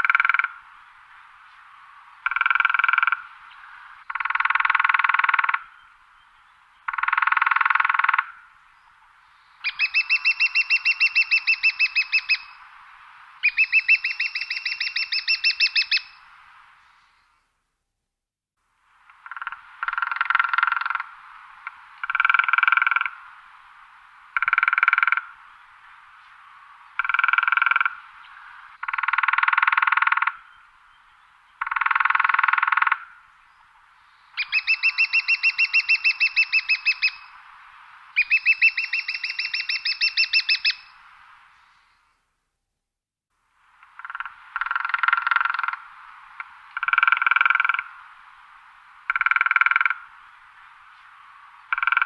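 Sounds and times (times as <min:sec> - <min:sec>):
woodpecker drumming on wood: 0:02.2 - 0:03.2, 0:04.1 - 0:05.6, 0:06.9 - 0:08.3, 0:19.1 - 0:23.2, 0:24.4 - 0:25.3, 0:27.0 - 0:28.0, 0:28.8 - 0:30.4, 0:31.6 - 0:33.1, 0:43.8 - 0:47.9, 0:49.1 - 0:50.0, 0:51.7 - 0:52.0.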